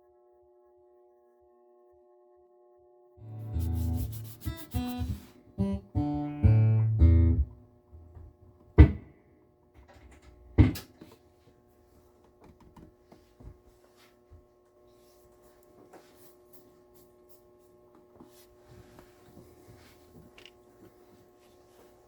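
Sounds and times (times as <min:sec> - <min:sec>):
acoustic guitar plucked notes: 0:03.2 - 0:07.6.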